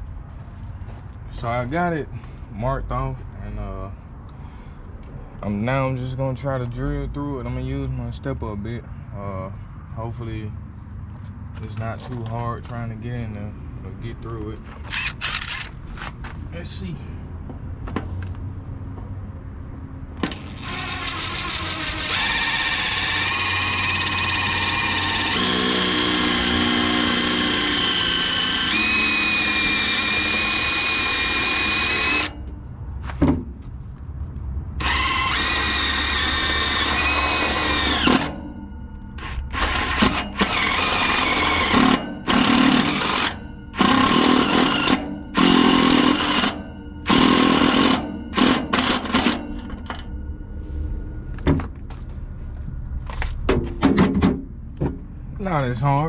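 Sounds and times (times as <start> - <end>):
power drill boring through metal: 14.9 - 15.7, 20.3 - 32.4, 34.8 - 38.5, 39.2 - 50.0.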